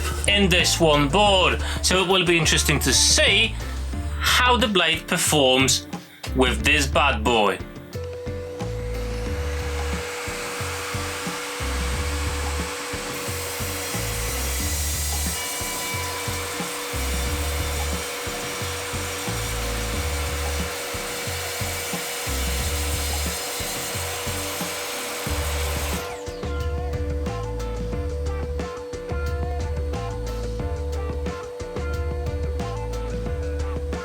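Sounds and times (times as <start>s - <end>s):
mitre saw cutting hardwood: 0.0s - 26.8s.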